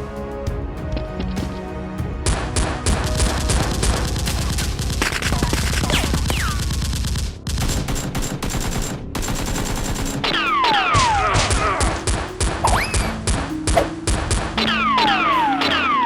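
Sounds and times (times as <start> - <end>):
automatic gunfire: 2.6 - 13.4.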